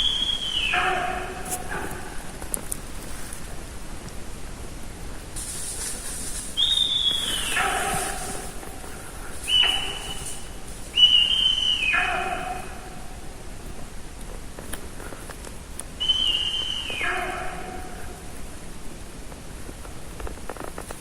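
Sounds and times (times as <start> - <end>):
deer alarm whistles: 0.0 - 1.8, 6.4 - 8.6, 9.3 - 12.8, 16.0 - 18.0.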